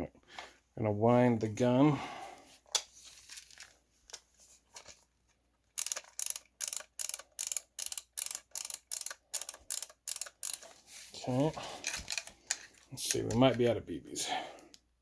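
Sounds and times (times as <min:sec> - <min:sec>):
magazine wheel ratcheting: 0:05.7 - 0:10.7.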